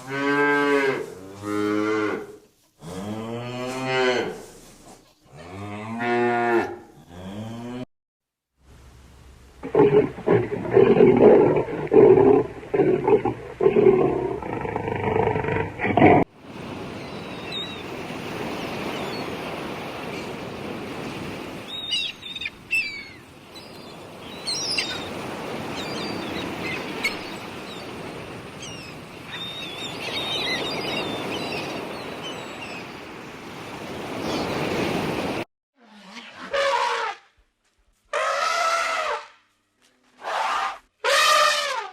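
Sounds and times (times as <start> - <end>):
outdoor ambience hiss: 8.6 - 15.8
animal growling: 9.6 - 16.3.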